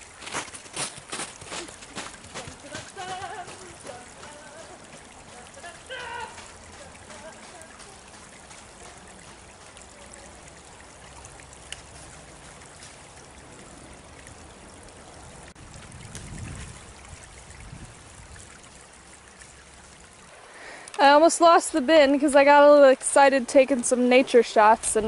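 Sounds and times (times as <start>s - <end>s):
stream running: 0.0s - 25.0s.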